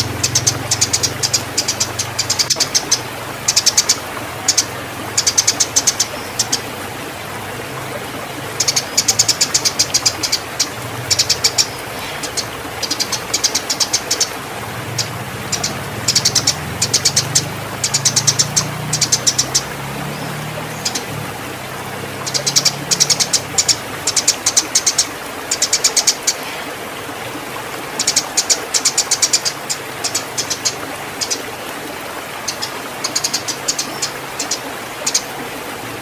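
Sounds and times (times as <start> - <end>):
sparrows chirping rapidly: 0.0 - 6.7, 8.6 - 21.2, 22.2 - 26.6, 28.0 - 31.4, 32.4 - 35.2.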